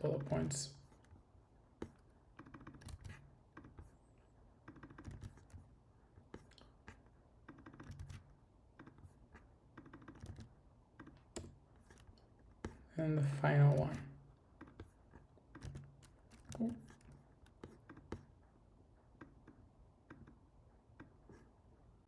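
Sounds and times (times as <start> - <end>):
keyboard typing: 1.8 - 4.0, 4.6 - 5.8, 6.4 - 12.8, 14.6 - 18.4.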